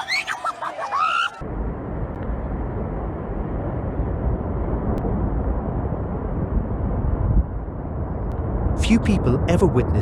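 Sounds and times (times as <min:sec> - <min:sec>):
wind buffeting microphone: 0:01.8 - 0:08.8.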